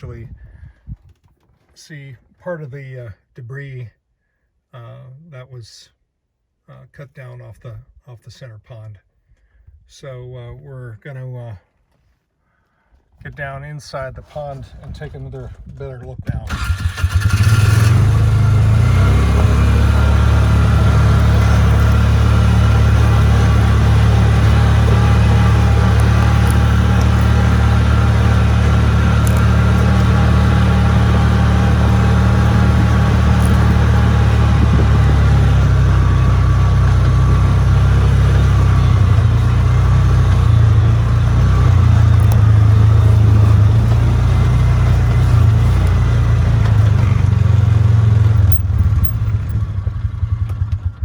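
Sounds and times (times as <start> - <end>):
vehicle engine running: 16.5 - 51.0.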